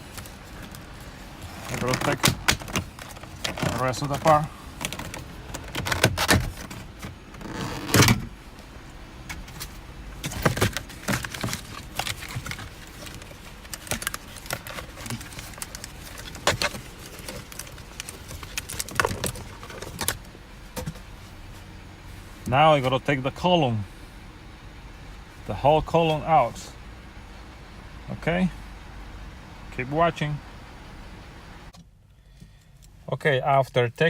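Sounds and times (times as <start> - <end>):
plastic trim being pried loose: 1.7 - 3.8.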